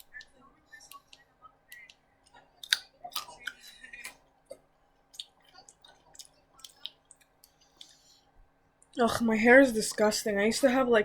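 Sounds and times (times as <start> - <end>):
chewing and mouth noises: 0.0 - 8.2.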